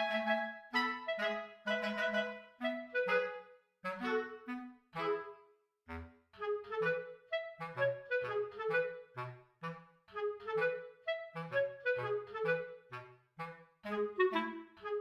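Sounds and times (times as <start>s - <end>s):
bouncy instrumental tune: 0.0s - 15.0s.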